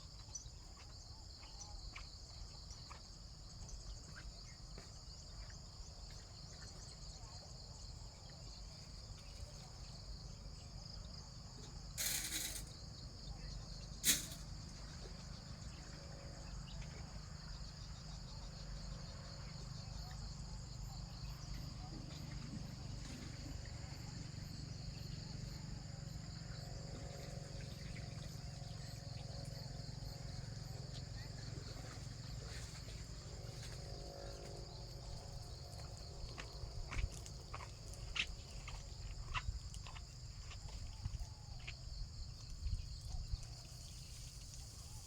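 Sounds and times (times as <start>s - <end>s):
insects chirping: 0.0s - 45.0s
short hiss: 12.0s - 12.7s, 14.1s - 14.4s.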